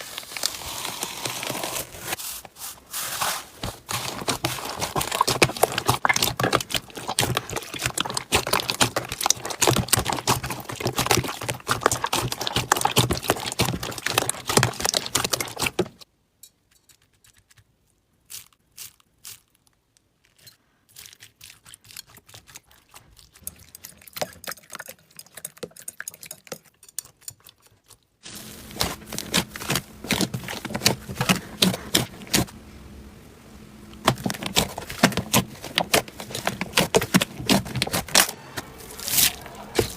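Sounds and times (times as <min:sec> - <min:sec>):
slime crackling and popping: 0:03.8 - 0:16.0.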